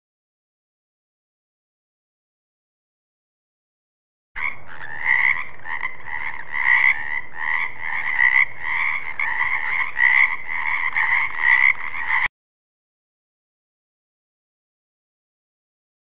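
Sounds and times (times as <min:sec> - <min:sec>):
frog croaking: 0:04.4 - 0:12.3.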